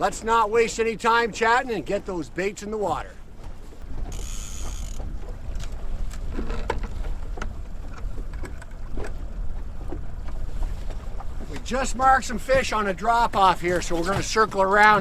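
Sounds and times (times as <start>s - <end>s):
boat motor running: 2.9s - 11.9s
wind on microphone: 3.3s - 12.7s.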